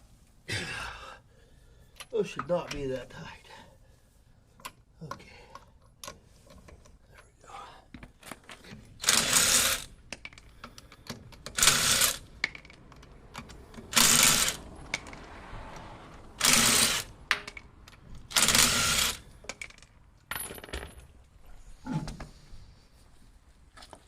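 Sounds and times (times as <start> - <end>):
impact wrench bursts: 9.0 - 10.4, 11.0 - 12.6, 13.3 - 19.3.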